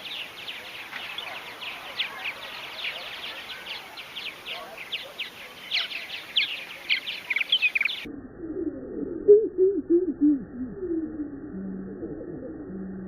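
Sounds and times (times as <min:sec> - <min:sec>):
purple martins chirping: 0:00.0 - 0:08.1
slowed-down bird calls: 0:00.0 - 0:13.0.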